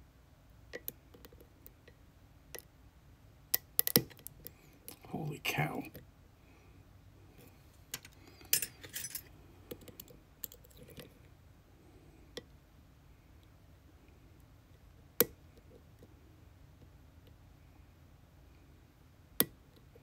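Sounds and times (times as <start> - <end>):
small metal parts clicking: 7.9 - 9.3
metallic jingle: 8.4 - 9.3.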